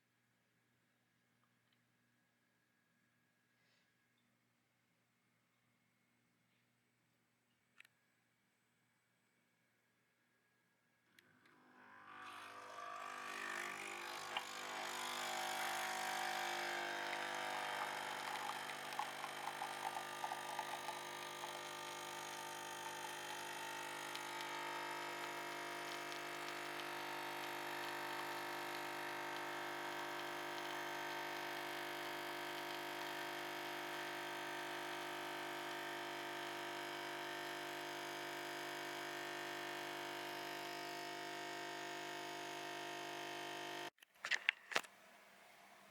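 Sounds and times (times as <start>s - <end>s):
coffee machine pump humming: 11.5s - 43.9s.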